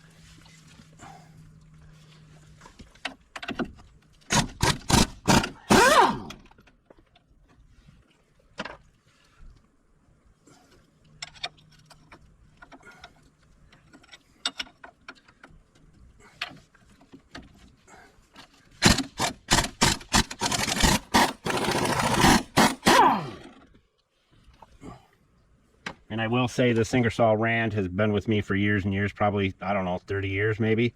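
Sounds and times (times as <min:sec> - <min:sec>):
air impact wrench rattling: 0:04.3 - 0:06.5, 0:18.8 - 0:23.6.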